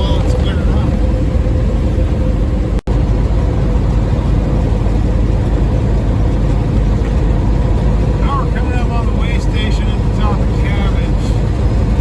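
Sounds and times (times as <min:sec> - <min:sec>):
truck engine and road noise: 0:00.0 - 0:12.0.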